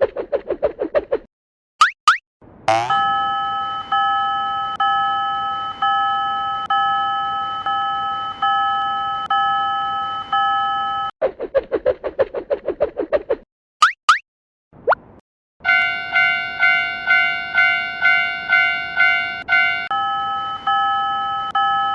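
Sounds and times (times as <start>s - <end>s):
fast warbling sound effect: 1.8s - 3.0s
railroad crossing bell ringing: 2.7s - 11.1s, 15.6s - 21.9s.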